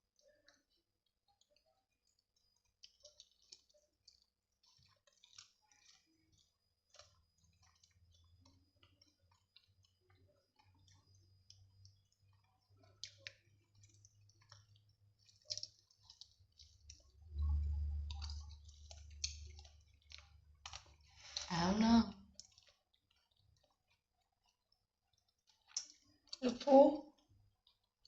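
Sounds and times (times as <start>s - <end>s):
mouth and chewing clicks: 0.2s - 21.6s, 22.3s - 26.5s, 27.1s - 28.0s
low rumble: 17.2s - 19.2s.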